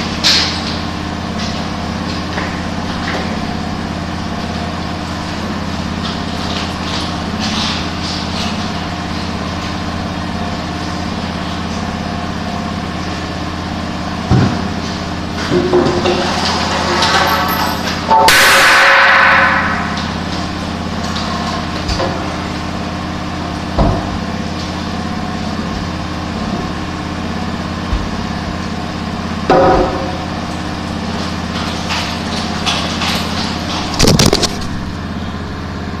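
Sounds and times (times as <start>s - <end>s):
steady machine hum: 0.0s - 36.0s
loud burst of noise: 18.3s - 20.0s.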